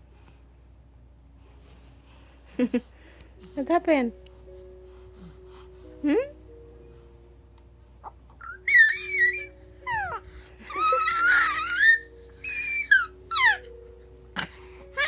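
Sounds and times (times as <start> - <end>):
soft tinkling melody: 3.4 - 15.0
baby squealing: 8.0 - 13.7.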